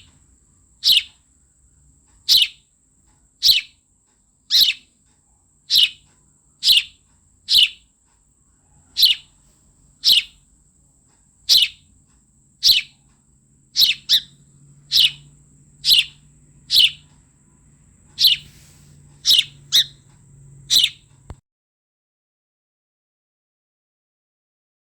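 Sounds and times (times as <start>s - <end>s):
sparrow chirping: 0.0s - 1.2s, 2.1s - 3.8s, 4.5s - 7.9s, 8.7s - 10.5s, 11.3s - 21.4s.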